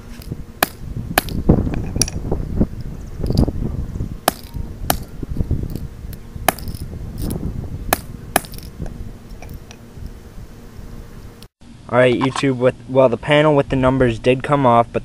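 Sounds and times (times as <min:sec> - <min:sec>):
sledgehammer hitting metal padlock: 0:00.1 - 0:02.2, 0:04.2 - 0:05.8, 0:06.5 - 0:08.8.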